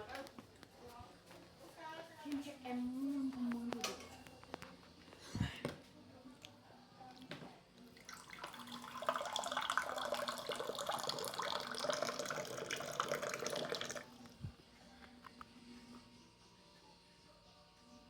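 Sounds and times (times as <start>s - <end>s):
water running from a tap: 8.0s - 14.2s.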